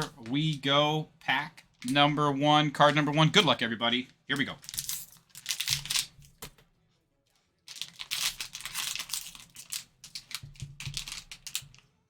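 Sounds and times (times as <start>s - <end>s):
plastic wrapper crinkling and tearing: 4.6s - 6.4s, 7.6s - 11.8s.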